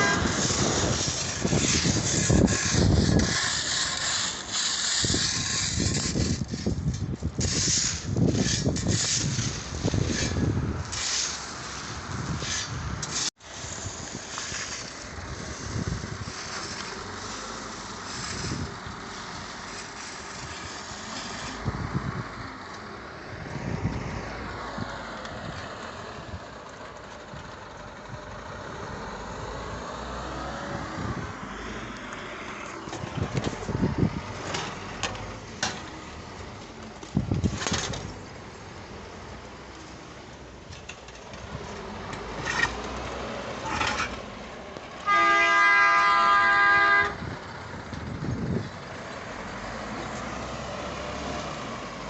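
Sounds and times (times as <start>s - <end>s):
wind on microphone: 0.0s - 11.0s, 15.1s - 16.6s, 21.6s - 22.4s, 30.6s - 31.5s, 32.8s - 34.4s, 47.1s - 48.9s.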